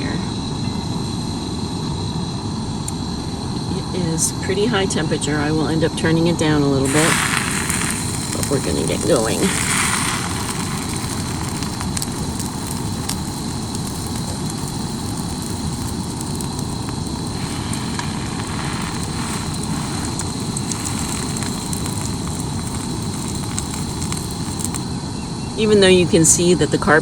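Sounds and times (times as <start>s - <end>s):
sandwiches sizzling in a pan: 6.8s - 25.0s
faint crackles: 6.8s - 27.0s.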